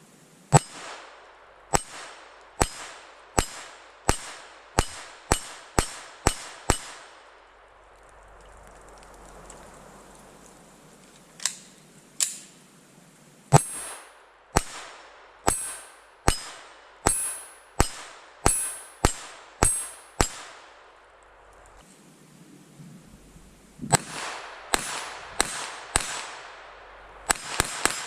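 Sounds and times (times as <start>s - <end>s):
pistol shots: 0.6s - 7.2s, 13.5s - 20.6s, 23.9s - 28.0s.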